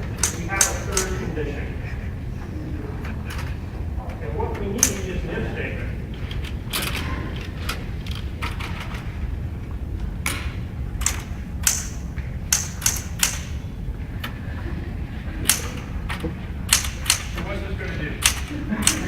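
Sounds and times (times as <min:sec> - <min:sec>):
typewriter keys clacking: 0:00.0 - 0:01.3, 0:04.8 - 0:05.2, 0:10.3 - 0:13.7, 0:15.4 - 0:17.5, 0:18.2 - 0:19.0
low room rumble: 0:00.0 - 0:19.0.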